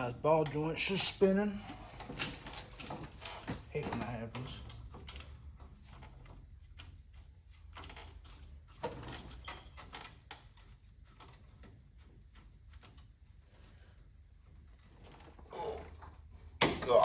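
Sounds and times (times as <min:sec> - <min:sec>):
hand tools clicking and knocking: 0:14.8 - 0:17.0.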